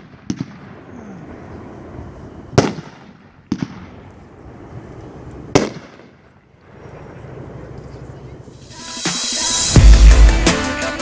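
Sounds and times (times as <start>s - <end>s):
steady hiss: 8.6s - 11.0s
firework bang: 8.7s - 10.5s.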